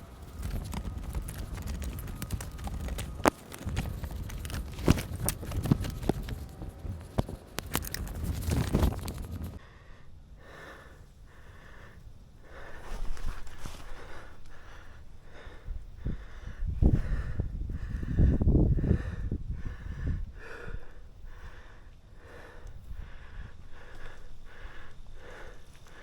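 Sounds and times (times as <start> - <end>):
footsteps crunching through dry leaves: 0.0 - 9.6, 12.9 - 14.0
twigs snapping: 0.0 - 9.6
heavy rhythmic breathing: 0.0 - 26.0.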